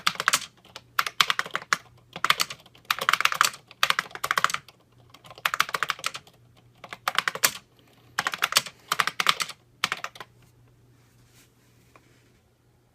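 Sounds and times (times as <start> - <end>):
keyboard keys clicking: 0.0 - 10.3.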